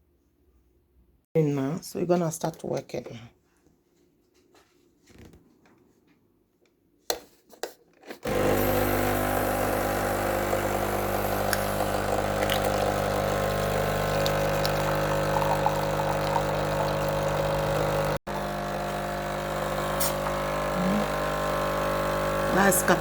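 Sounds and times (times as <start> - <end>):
coffee machine pump humming: 8.3 - 23.0.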